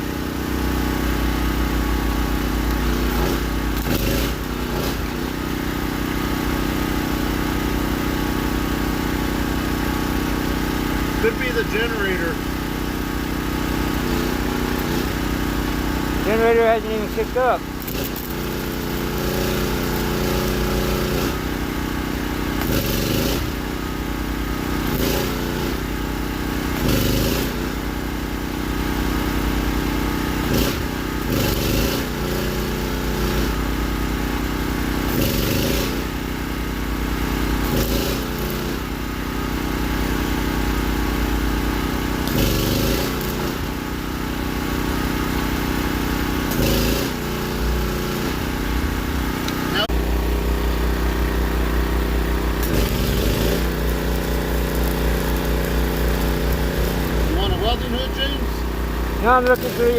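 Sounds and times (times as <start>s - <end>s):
generator running: 0.0s - 59.9s
hissing crackle bursts: 13.9s - 21.5s, 42.2s - 43.8s, 50.2s - 59.9s.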